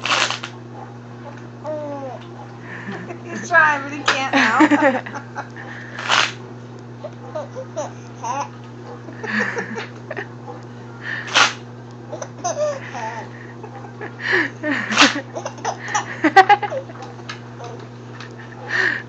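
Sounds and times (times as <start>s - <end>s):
baby laughing and babbling: 1.3s - 2.3s, 7.0s - 8.6s, 12.1s - 13.3s, 15.0s - 16.1s.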